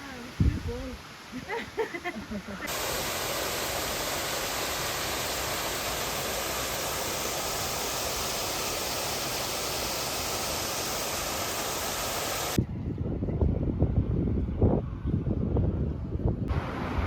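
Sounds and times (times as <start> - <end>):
waterfall rushing: 1.0 - 12.6, 16.5 - 17.0.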